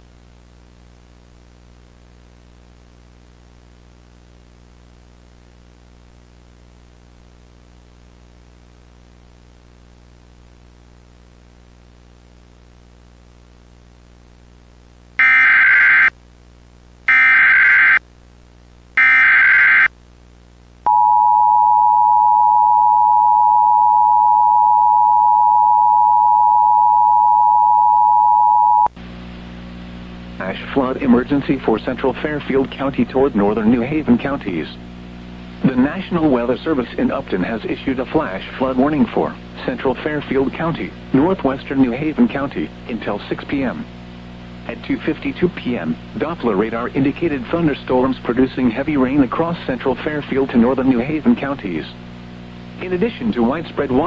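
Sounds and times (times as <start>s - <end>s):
low steady hum: 0.0s - 54.0s
long steady attention tone: 15.2s - 16.1s, 17.1s - 18.0s, 19.0s - 19.9s, 20.8s - 29.0s.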